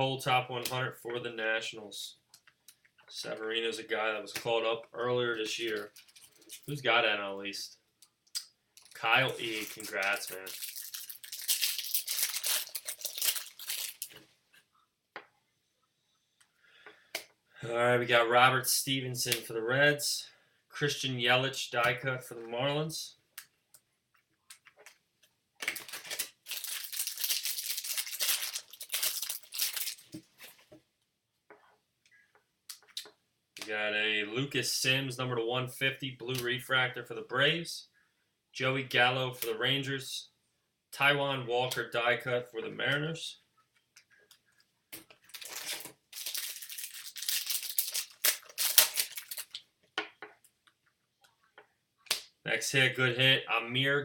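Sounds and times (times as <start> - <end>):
foil wrapper tearing and crinkling: 8.8 - 14.2, 25.6 - 30.2, 45.3 - 49.6.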